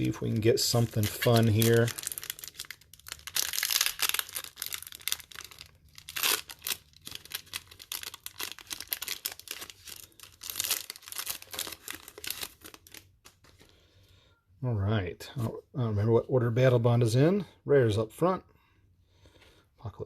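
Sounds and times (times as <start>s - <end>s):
foil wrapper crinkling and tearing: 0.0s - 13.5s.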